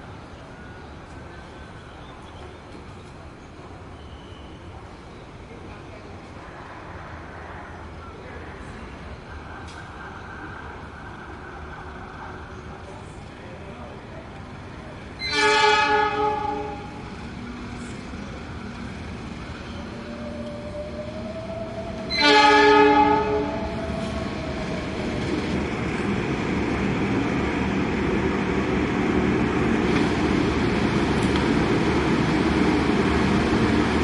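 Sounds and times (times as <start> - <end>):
train rumble approaching: 0.0 - 34.0
train horn blasts: 15.2 - 17.0, 22.0 - 23.8.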